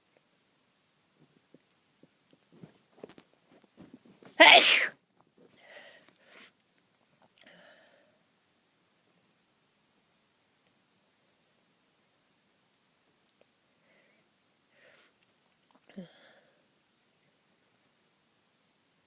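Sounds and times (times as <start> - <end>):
person sneezing: 4.4 - 5.0
catching breaths: 5.5 - 6.6.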